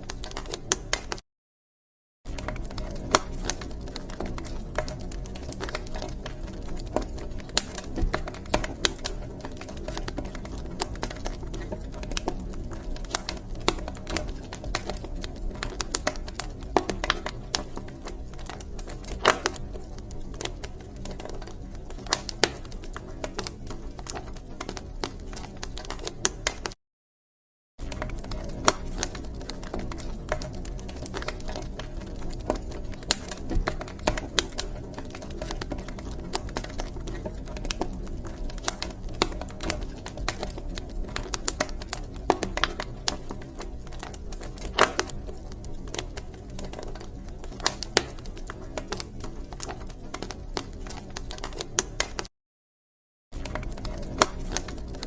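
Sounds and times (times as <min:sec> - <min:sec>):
wood fire crackling: 0:00.0 - 0:01.2, 0:02.3 - 0:26.8, 0:27.8 - 0:52.3, 0:53.4 - 0:55.0.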